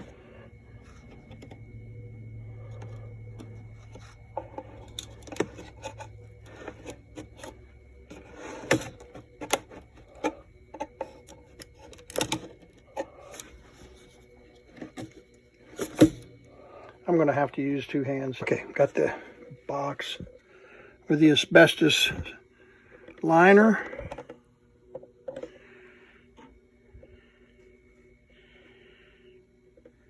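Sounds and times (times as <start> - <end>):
hands handling radio cabinet: 0.0 - 1.9, 2.6 - 16.4
low hum: 0.0 - 30.0.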